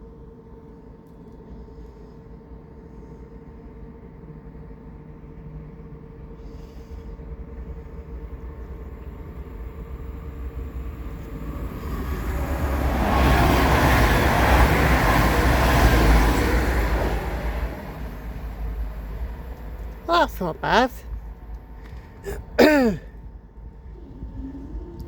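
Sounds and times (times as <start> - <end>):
train rumbling past: 7.5 - 22.2.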